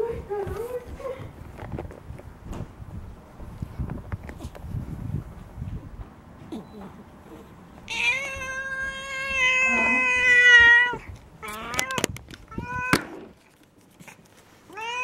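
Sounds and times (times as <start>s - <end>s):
cat meowing: 7.9s - 13.1s, 14.7s - 15.0s.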